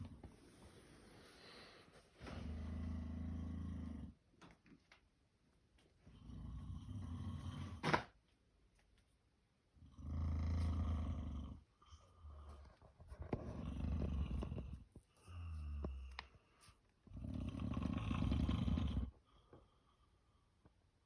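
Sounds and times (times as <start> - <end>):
person snoring: 17.1 - 19.1.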